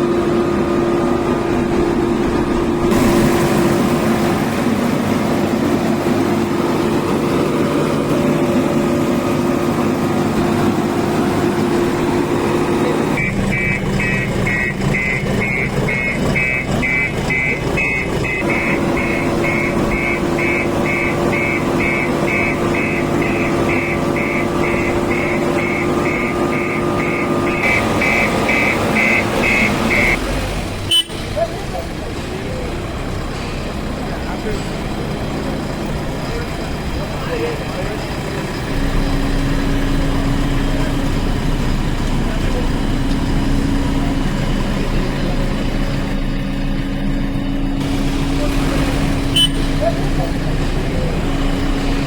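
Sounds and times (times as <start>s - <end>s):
diesel engine running: 0.0s - 52.0s
electronic warning beeper: 13.1s - 30.2s.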